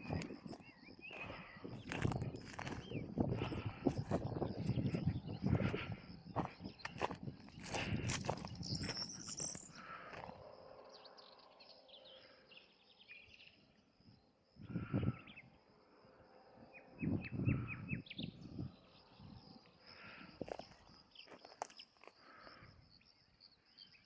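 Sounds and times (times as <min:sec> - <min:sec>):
bird chirps: 0:00.0 - 0:10.4.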